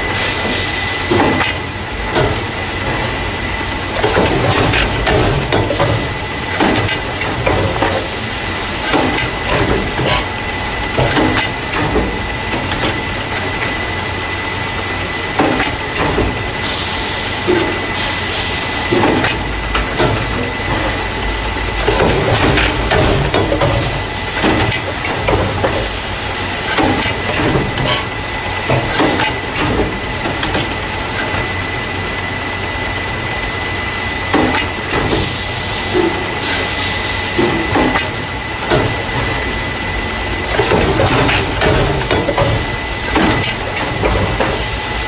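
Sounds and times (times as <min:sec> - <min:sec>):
machine hissing: 0:00.0 - 0:32.5, 0:33.2 - 0:45.0
machine hum with high whine: 0:00.0 - 0:45.0
mechanism clacks and knocks: 0:03.9 - 0:08.1, 0:08.8 - 0:13.8, 0:15.4 - 0:16.5, 0:18.9 - 0:25.9, 0:26.6 - 0:31.5, 0:34.3 - 0:36.7, 0:37.4 - 0:44.7.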